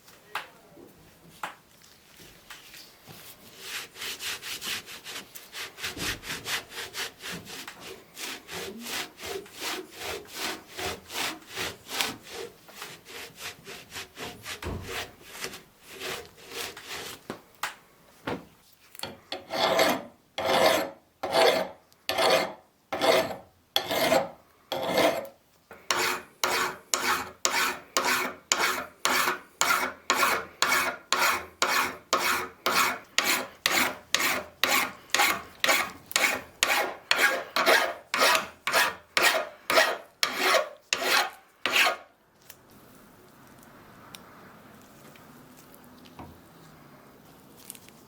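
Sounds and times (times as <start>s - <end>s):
hand file rasping: 3.5s - 17.2s, 19.3s - 42.1s.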